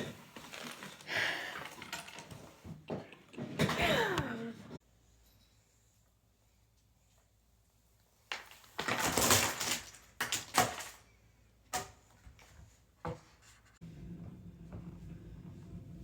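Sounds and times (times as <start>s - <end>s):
rustling and clattering: 0.0s - 3.8s.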